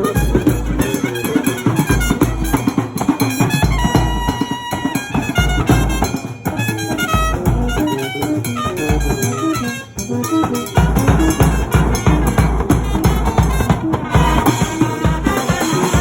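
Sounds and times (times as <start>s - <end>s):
heavy bass drum beat: 0.0s - 9.6s, 10.4s - 16.0s
brass band playing: 0.0s - 16.0s.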